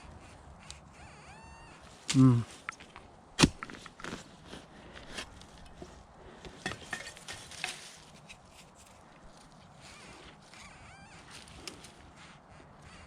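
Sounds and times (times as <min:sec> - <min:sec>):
digging scrapes in soil: 0:03.4 - 0:10.5.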